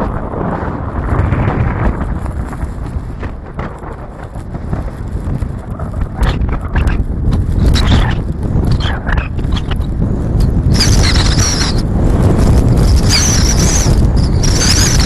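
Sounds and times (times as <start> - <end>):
wind buffeting microphone: 0.0 - 15.0
car driving rumble: 7.3 - 15.0.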